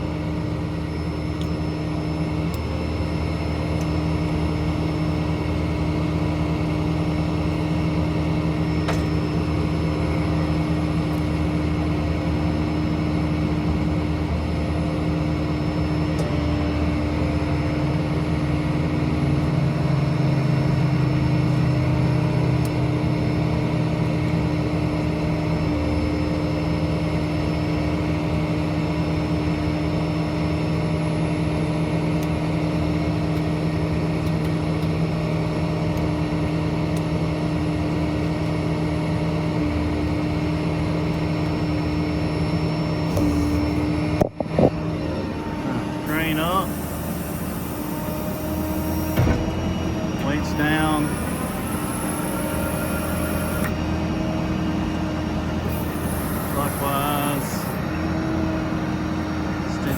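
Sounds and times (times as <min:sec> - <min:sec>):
diesel engine drone: 0:00.0 - 0:59.9
steady hum: 0:42.9 - 0:59.9.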